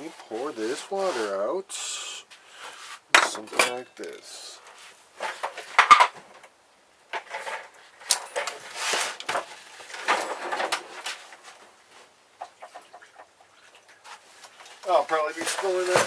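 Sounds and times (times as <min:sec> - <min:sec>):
water glugging and splashing: 0:12.4 - 0:14.6.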